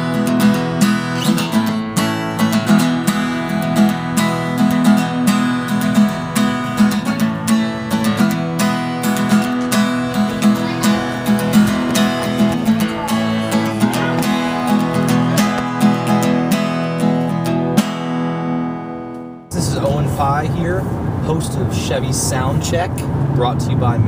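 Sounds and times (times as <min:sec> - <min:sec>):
strummed acoustic guitar music: 0:00.0 - 0:19.5.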